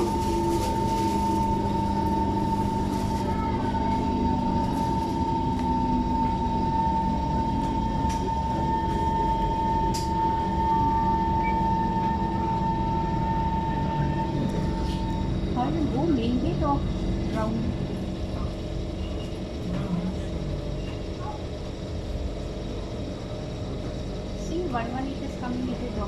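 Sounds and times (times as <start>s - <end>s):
high whine: 0.0s - 26.0s
train running rumble: 0.0s - 26.0s.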